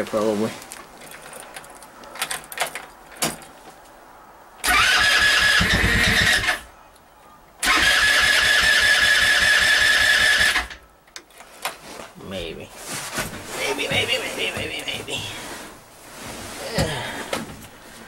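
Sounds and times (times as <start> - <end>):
engine cranking on starter: 4.6 - 6.6, 7.6 - 10.8.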